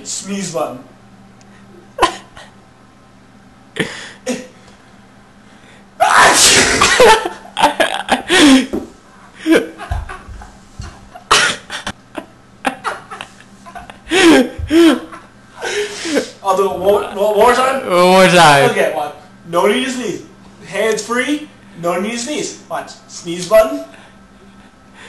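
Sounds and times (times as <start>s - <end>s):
person sneezing loudly: 6.0s - 7.2s.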